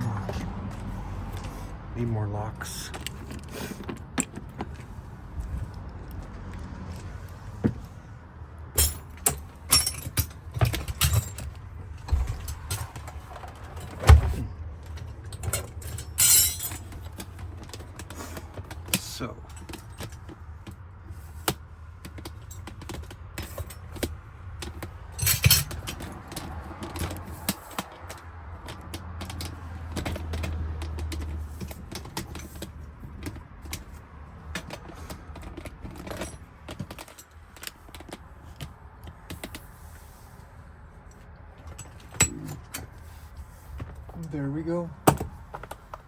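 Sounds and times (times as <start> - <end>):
metal lock parts clicking: 12.2 - 18.1, 22.1 - 33.9.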